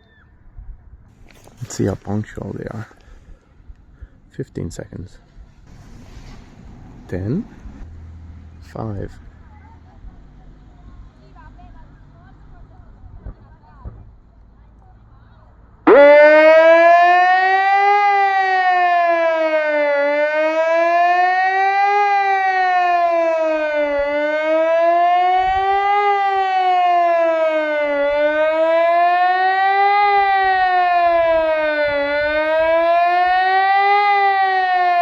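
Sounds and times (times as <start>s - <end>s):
siren wailing: 15.9s - 35.0s.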